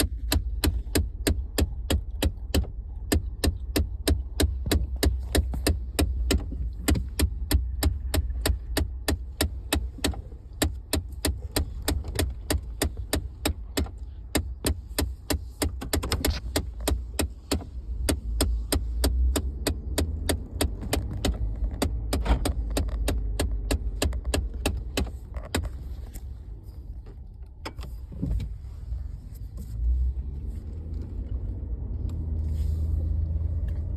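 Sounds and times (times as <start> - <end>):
rapid dashboard ticking: 0.0 - 26.4
truck engine low rumble: 0.0 - 33.9.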